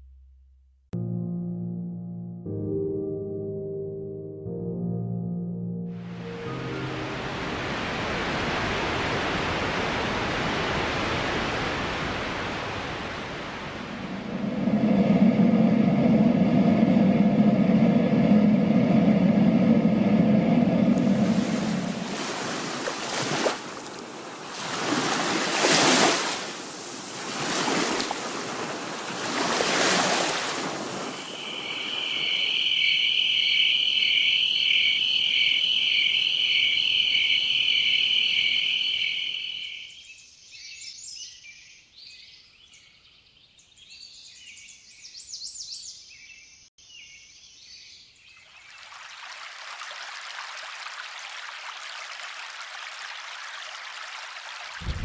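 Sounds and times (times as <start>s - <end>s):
ocean waves: 6.0s - 33.2s, 48.8s - 55.0s
running water hiss: 21.1s - 33.2s
bird-like chirps: 31.1s - 48.6s
high pulsing chirr: 31.2s - 39.8s.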